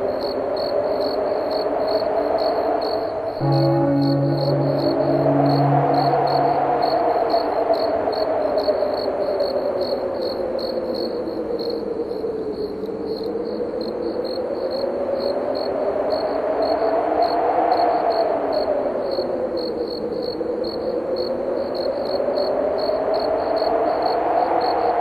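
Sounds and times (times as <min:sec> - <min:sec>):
crickets chirping: 0:00.0 - 0:25.0
wind whistling: 0:00.4 - 0:09.8
church bell hum: 0:03.4 - 0:07.7.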